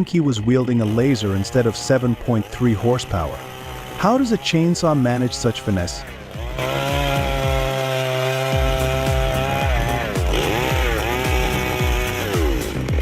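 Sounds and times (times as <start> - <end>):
chainsaw cutting log: 0.0 - 13.0
music with thumping beat: 6.0 - 13.0.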